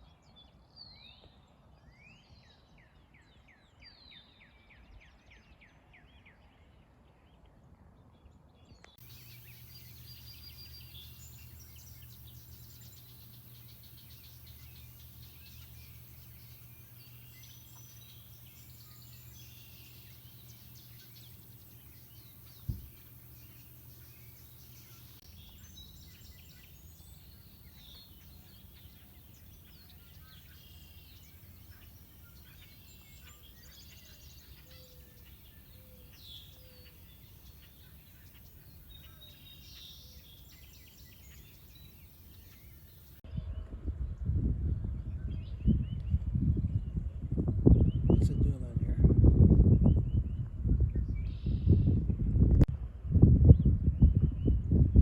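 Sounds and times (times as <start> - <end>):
small birds chirping: 8.7 - 43.2
steady low hum: 9.0 - 43.2.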